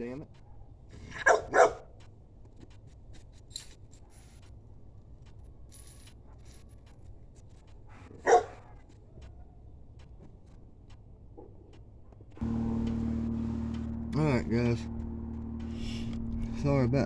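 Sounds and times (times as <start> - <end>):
dog barking: 0.5 - 1.9, 7.9 - 8.8.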